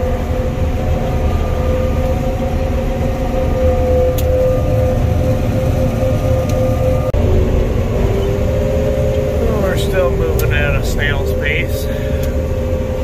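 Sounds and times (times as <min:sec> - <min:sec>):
combine harvester engine rumble: 0:00.0 - 0:13.0
steady machine whine: 0:00.0 - 0:13.0.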